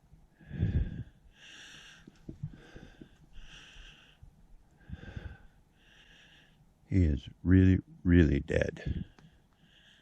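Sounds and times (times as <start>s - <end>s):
man breathing heavily: 0.3s - 6.8s, 8.8s - 10.0s.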